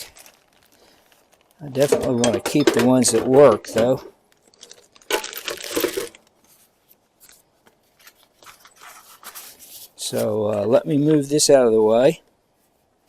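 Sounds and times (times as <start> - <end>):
rustling items in toolbox: 0.0 - 10.7.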